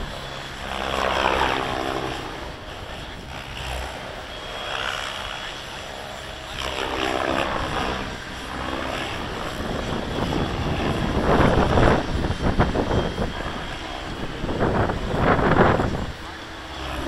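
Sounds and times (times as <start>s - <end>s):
model helicopter motor running: 0.0s - 17.0s.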